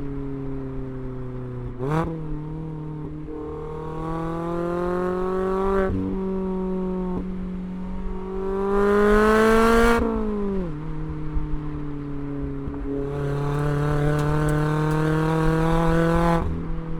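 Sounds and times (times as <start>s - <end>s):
car engine revving hard: 13.0s - 16.5s.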